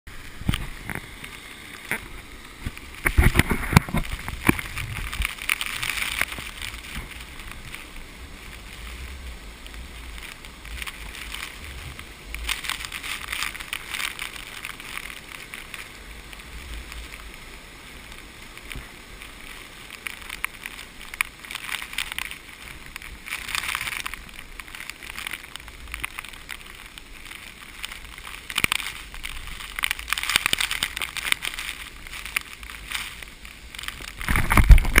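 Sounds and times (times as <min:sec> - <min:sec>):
wind buffeting microphone: 0:00.1 - 0:14.6, 0:31.5 - 0:35.0
waterfall rushing: 0:00.1 - 0:35.0.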